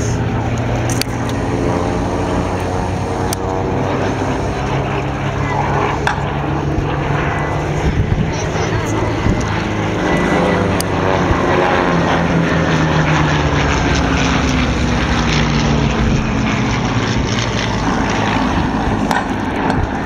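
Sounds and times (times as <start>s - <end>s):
propeller plane flying past: 0.0s - 20.0s.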